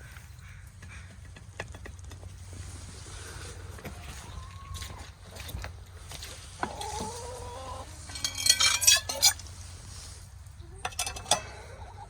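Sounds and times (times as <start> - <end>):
chickens squawking: 3.0 - 9.6, 10.5 - 12.0.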